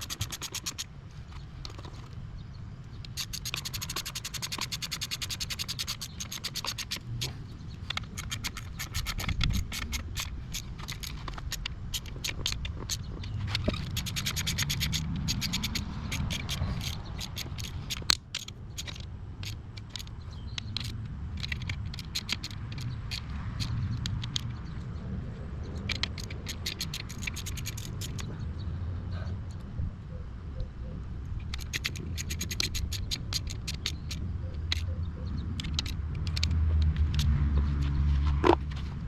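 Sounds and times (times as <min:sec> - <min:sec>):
hand ratchet clicking: 0:00.0 - 0:00.9, 0:03.1 - 0:24.5, 0:25.9 - 0:28.3, 0:31.5 - 0:34.9, 0:35.6 - 0:37.4.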